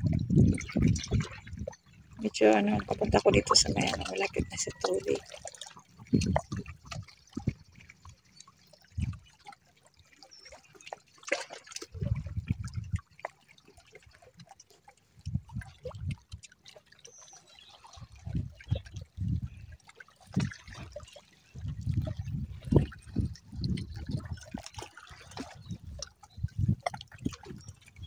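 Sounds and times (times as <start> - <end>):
small waves lapping at shoreline: 0.0 - 28.0.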